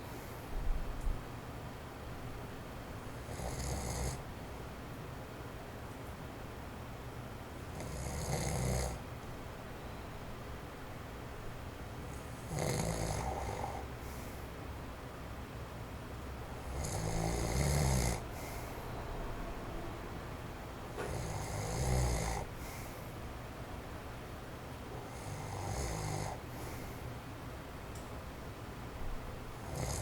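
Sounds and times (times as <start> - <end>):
electric fan wind noise: 0.0 - 30.0
man snoring: 3.3 - 4.2, 7.8 - 9.0, 12.4 - 13.9, 16.6 - 18.6, 21.0 - 22.5, 25.0 - 26.4, 29.6 - 30.0.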